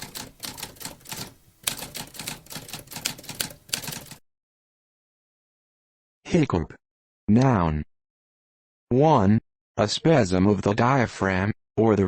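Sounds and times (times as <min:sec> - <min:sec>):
typewriter keys typing: 0:00.0 - 0:04.2.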